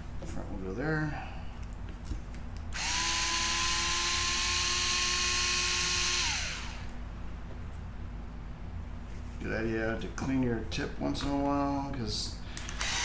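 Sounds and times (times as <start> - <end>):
electric screwdriver running: 2.8 - 7.0, 12.6 - 13.0.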